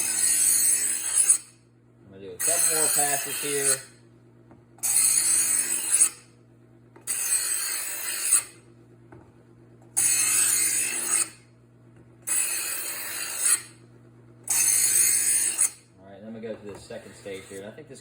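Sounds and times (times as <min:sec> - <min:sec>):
knife scraping in sharpener: 0:00.0 - 0:01.5, 0:02.4 - 0:03.9, 0:04.8 - 0:06.3, 0:07.0 - 0:08.6, 0:10.0 - 0:11.4, 0:12.2 - 0:13.8, 0:14.5 - 0:15.8, 0:16.7 - 0:17.6
sharpener motor humming: 0:02.4 - 0:03.9, 0:10.0 - 0:11.4, 0:14.5 - 0:15.8, 0:16.8 - 0:17.7.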